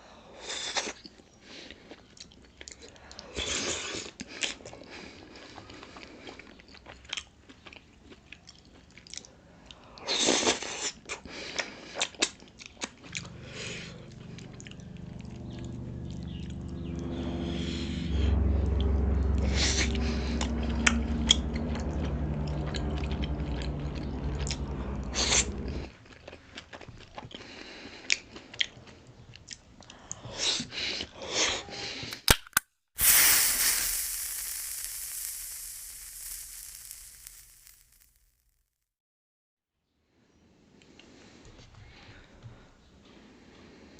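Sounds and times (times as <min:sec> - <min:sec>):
chewing and biting dumplings: 0:03.4 - 0:13.0
low hum: 0:13.0 - 0:26.3, 0:33.0 - 0:38.4
loud hiss: 0:33.0 - 0:38.4.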